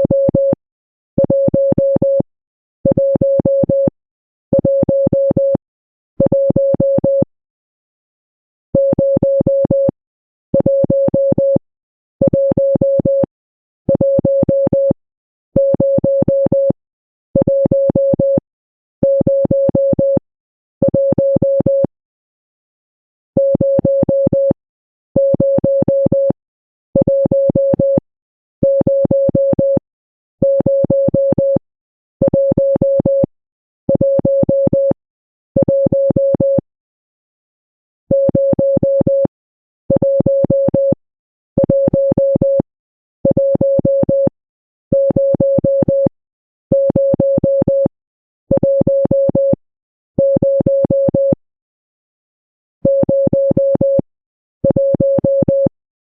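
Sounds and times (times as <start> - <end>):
morse code beeps: 44.9 - 46.1, 46.7 - 47.9, 50.2 - 51.4, 52.8 - 55.7.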